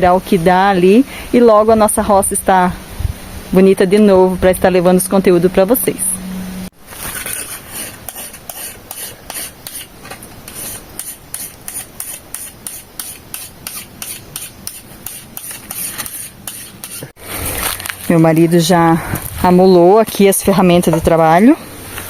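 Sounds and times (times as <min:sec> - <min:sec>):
file rasping along blade: 0:07.2 - 0:09.9, 0:10.5 - 0:17.1.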